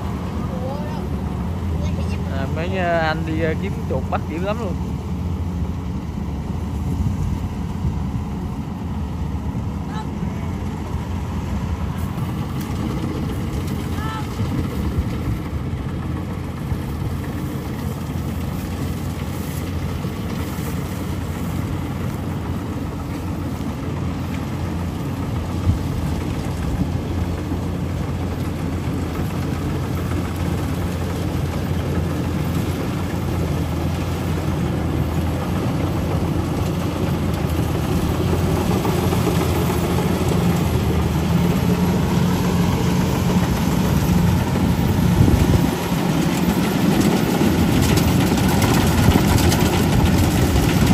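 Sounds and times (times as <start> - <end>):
combine harvester engine droning: 0.0 - 50.9.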